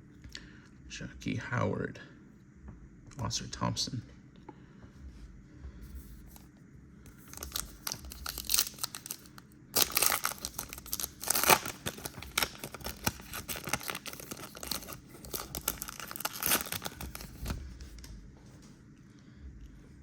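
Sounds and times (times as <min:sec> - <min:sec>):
plastic wrapper crinkling and tearing: 0:07.1 - 0:18.0.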